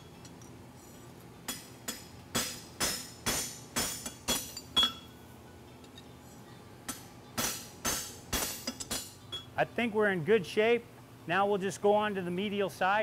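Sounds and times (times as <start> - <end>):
hammer striking horseshoe on anvil: 1.4 - 5.1, 6.8 - 9.5.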